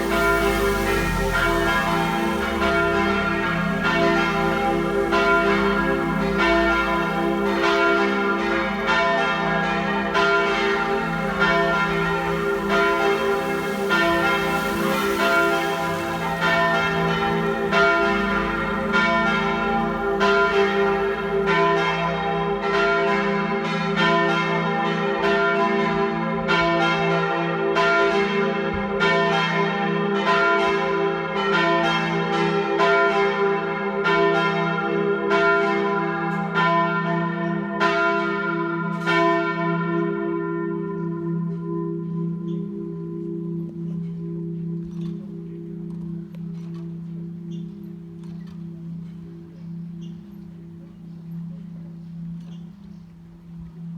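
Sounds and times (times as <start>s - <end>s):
church bells ringing: 0.0s - 53.9s.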